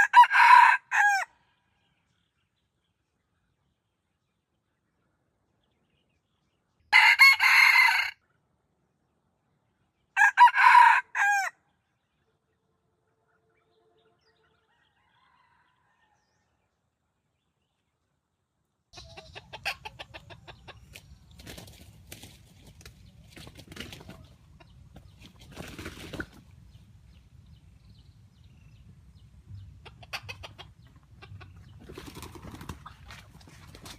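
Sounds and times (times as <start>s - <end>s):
rooster crowing: 0.0s - 1.4s, 6.9s - 8.2s, 10.2s - 11.6s, 14.6s - 16.5s
chicken clucking: 19.0s - 26.8s, 29.5s - 33.9s.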